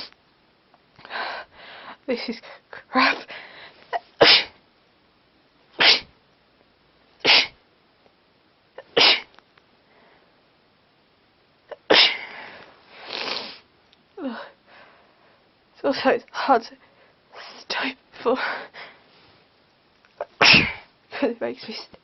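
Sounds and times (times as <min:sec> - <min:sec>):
person sneezing: 0:03.9 - 0:04.6, 0:05.8 - 0:06.1, 0:07.2 - 0:07.6, 0:08.8 - 0:09.3, 0:11.7 - 0:12.4, 0:20.2 - 0:20.9.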